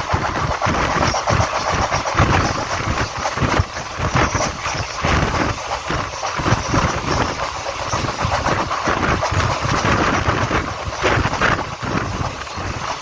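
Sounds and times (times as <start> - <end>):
train rushing noise: 0.0 - 13.0
wind buffeting microphone: 0.0 - 13.0.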